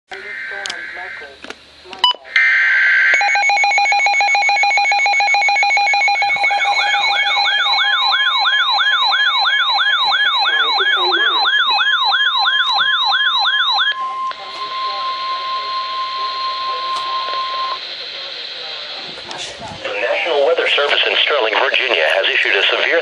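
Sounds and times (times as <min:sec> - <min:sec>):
data tones: 0:02.0 - 0:18.0
rapidly pulsed beeping: 0:03.2 - 0:18.4
upward sweeping siren: 0:05.3 - 0:17.8.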